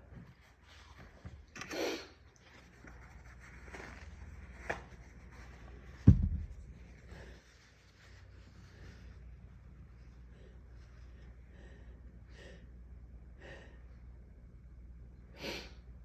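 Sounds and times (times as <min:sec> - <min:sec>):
loud thump: 0:06.1 - 0:06.5.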